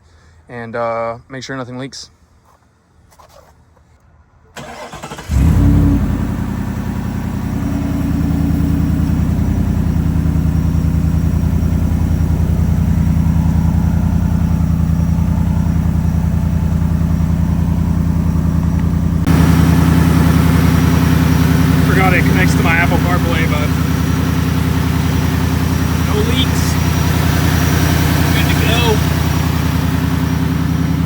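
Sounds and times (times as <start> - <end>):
starter motor cranking: 4.6 - 5.9, 18.8 - 30.3
car engine revving and idling: 4.6 - 31.0.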